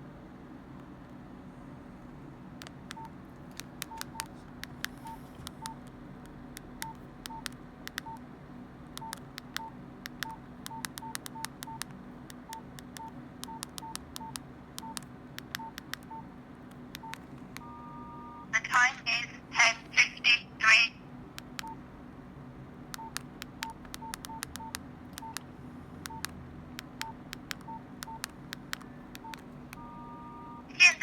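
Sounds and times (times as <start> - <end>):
keypad beeps: 2.6 - 5.9, 6.6 - 8.2, 9.0 - 16.3, 17.0 - 18.5, 21.4 - 21.8, 23.0 - 25.4, 26.0 - 30.7
two-note phone tone: 17.6 - 18.5, 29.8 - 30.7.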